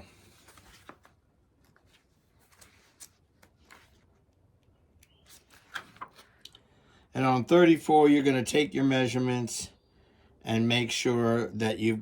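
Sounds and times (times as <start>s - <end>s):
paper pages being turned: 0.2s - 4.4s, 5.0s - 6.5s.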